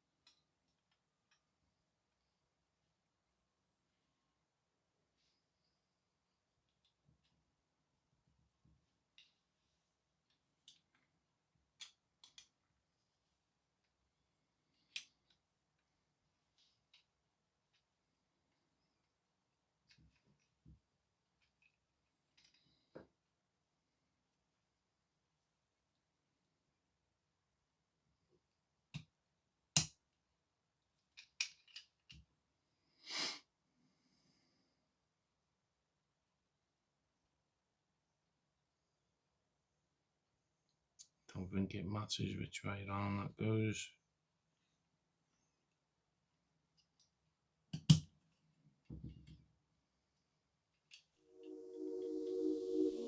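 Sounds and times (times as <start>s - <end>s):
small plastic parts clicking: 10.3s - 11.1s, 11.7s - 12.6s, 31.0s - 32.3s.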